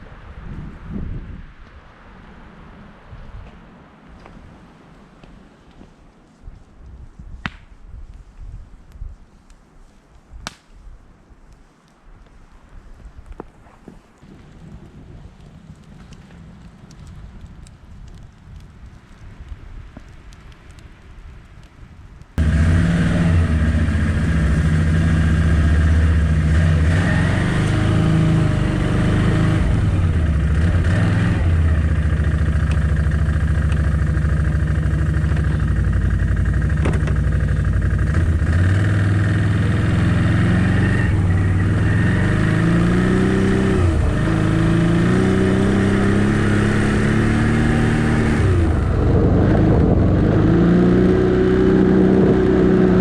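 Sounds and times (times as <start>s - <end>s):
atv engine revving: 22.4s - 53.0s.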